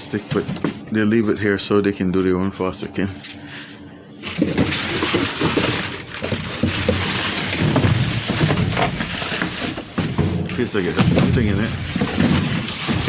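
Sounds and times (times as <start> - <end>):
rubbish bags rustling and crunching: 4.2 - 13.0.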